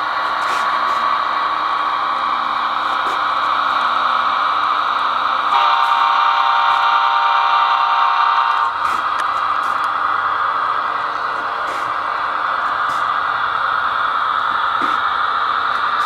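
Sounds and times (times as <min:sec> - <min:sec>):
steady hissing running sound: 0:00.0 - 0:16.0
model locomotive air horn: 0:05.5 - 0:08.9.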